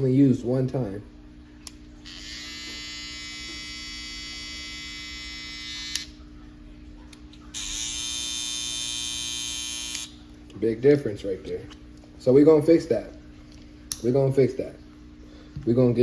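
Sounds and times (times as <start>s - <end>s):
hair trimmer buzzing: 2.0s - 6.2s, 7.5s - 10.2s.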